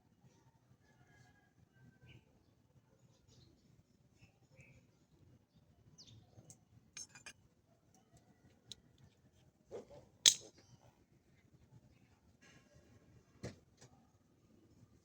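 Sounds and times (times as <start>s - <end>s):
metallic clinks of tools handled: 7.0s - 7.4s, 10.3s - 10.5s.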